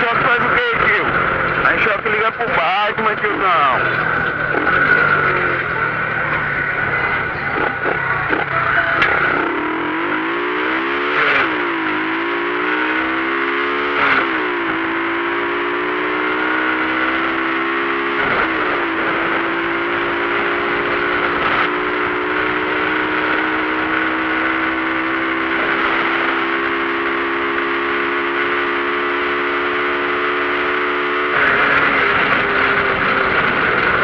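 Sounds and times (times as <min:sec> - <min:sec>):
motorcycle engine revving: 0:00.0 - 0:34.0.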